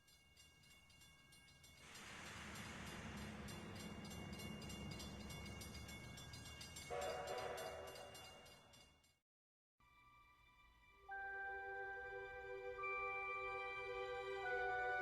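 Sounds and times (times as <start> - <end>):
train rumble and hiss: 1.6 - 8.0, 11.1 - 15.0
train horn chord: 6.9 - 8.1.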